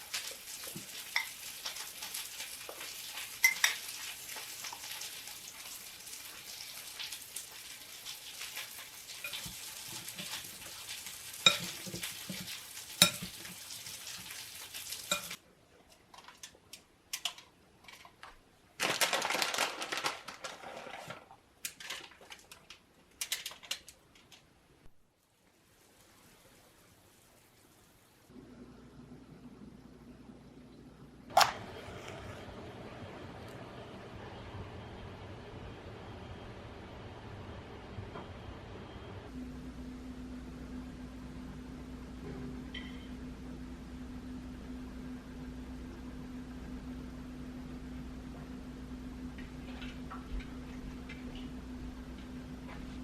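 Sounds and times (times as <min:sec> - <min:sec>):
kitchen clatter: 0:00.0 - 0:05.2, 0:08.2 - 0:18.2, 0:18.8 - 0:24.4
food sizzling in a frying pan: 0:00.0 - 0:15.4.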